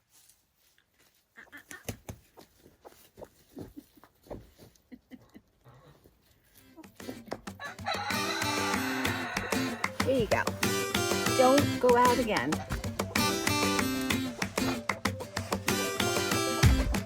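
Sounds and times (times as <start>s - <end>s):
rustling: 0.0s - 5.0s
soft irregular footsteps: 0.0s - 5.4s, 6.0s - 15.9s.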